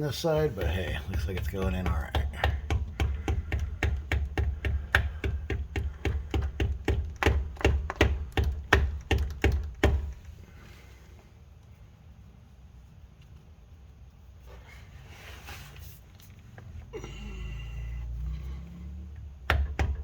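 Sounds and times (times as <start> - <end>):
rapid light tapping: 0.0 - 10.4.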